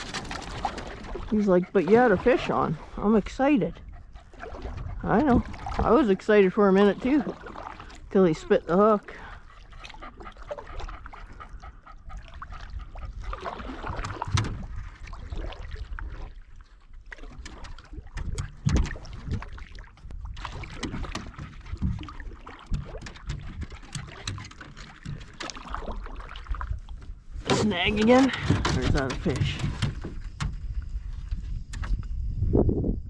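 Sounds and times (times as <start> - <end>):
wind rumble on microphone: 0.0 - 7.4, 8.0 - 16.6, 17.3 - 33.0
paddle strokes and splashes: 0.0 - 32.0
knocks against canoe hull: 20.7 - 25.8, 27.4 - 30.7.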